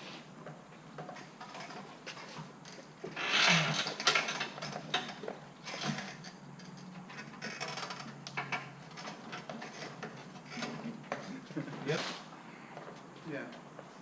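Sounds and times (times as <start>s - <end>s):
mechanical clattering and clicking: 1.0s - 11.4s.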